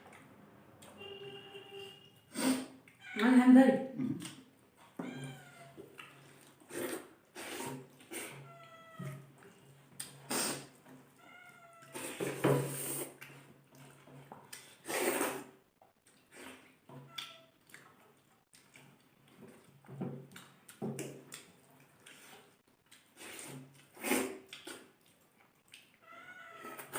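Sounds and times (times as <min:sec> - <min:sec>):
cat meowing: 0:05.0 - 0:05.8, 0:08.4 - 0:09.3, 0:11.2 - 0:12.1, 0:26.0 - 0:26.9.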